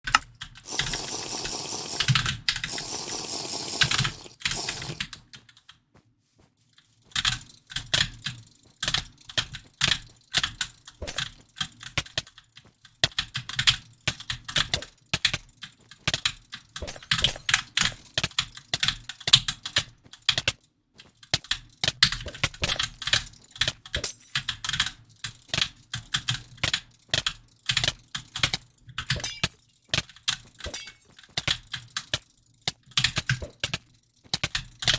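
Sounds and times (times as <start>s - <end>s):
sharp typing-like clicks: 0.1s - 5.7s, 21.2s - 29.2s, 29.9s - 34.9s.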